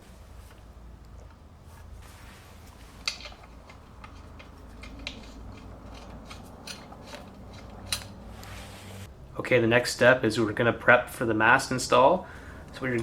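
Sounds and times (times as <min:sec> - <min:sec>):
metal washers clicking: 0:03.0 - 0:08.3.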